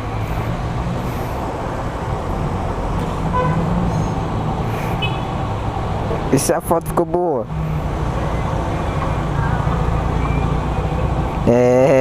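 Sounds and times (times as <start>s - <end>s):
road traffic: 0.0s - 12.0s
short beeps: 10.2s - 10.6s.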